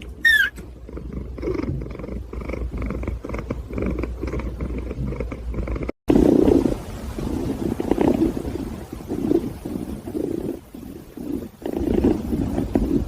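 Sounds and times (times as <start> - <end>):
cat purring: 0.0 - 13.0.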